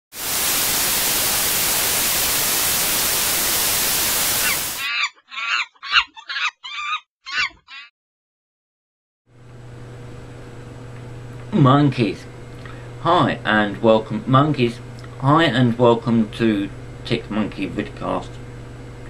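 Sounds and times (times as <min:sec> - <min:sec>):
white-noise static hiss: 0:00.2 - 0:04.8
high wavering animal calls: 0:04.4 - 0:07.9.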